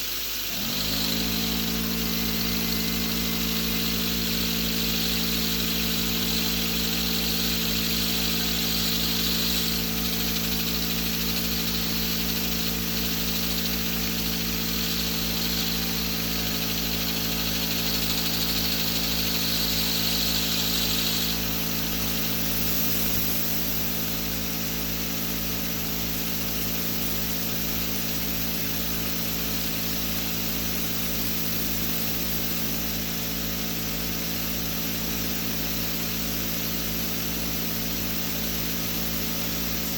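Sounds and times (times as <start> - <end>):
hiss: 0.0 - 39.9
turbine humming: 0.5 - 26.1.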